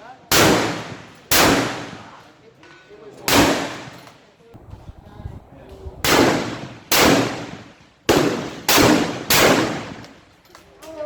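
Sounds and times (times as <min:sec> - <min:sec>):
rifle shots echoing: 0:00.3 - 0:02.2, 0:03.3 - 0:04.0, 0:06.0 - 0:10.2.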